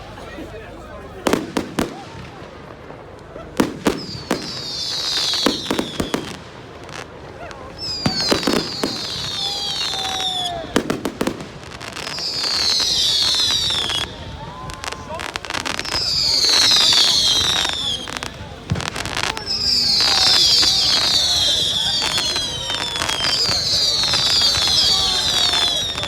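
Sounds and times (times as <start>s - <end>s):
fireworks banging: 1.2s - 26.0s
firework whistle falling in pitch: 4.0s - 6.3s, 7.8s - 10.8s, 12.0s - 15.0s, 19.2s - 26.0s.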